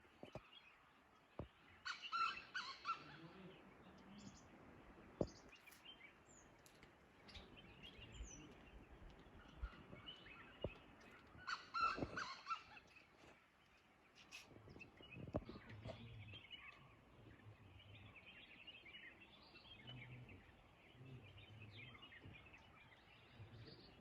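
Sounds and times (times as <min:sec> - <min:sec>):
birds chirping and squawking: 0:01.4 - 0:03.5, 0:08.2 - 0:13.4.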